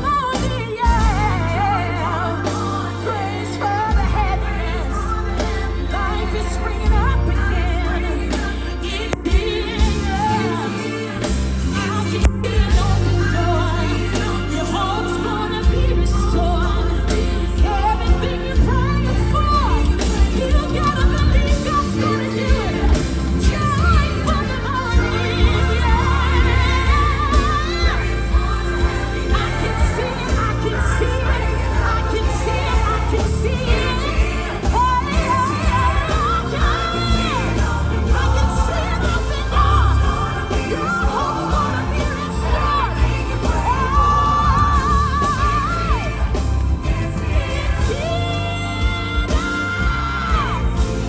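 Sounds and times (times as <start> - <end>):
band with bass and drums: 0.0 - 51.0
voices singing with vibrato: 0.0 - 51.0.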